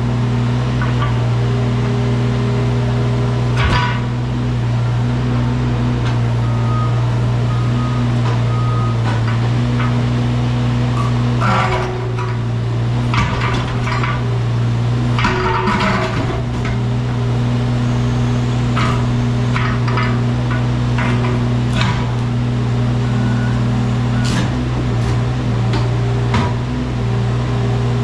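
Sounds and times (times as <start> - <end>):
diesel engine running: 0.0 - 28.0
metallic clanks and knocks: 3.6 - 4.2, 9.0 - 10.2, 11.0 - 14.3, 15.1 - 17.1, 18.6 - 22.4.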